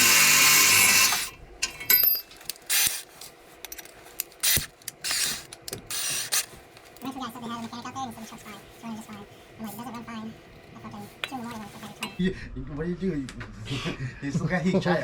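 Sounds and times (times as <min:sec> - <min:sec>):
sharp clicks of tools: 0:00.0 - 0:07.1
scrapes and rubs of hand tools: 0:10.8 - 0:12.2.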